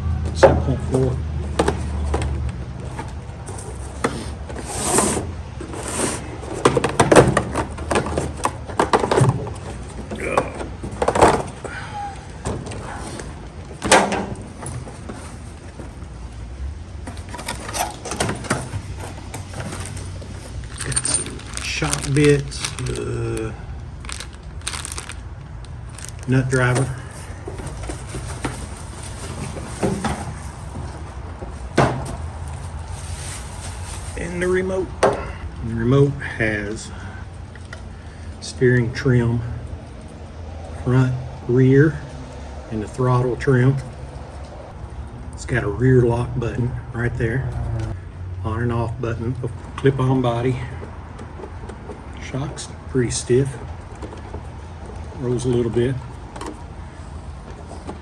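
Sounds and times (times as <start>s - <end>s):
packaging rustling: 18.6s - 30.5s.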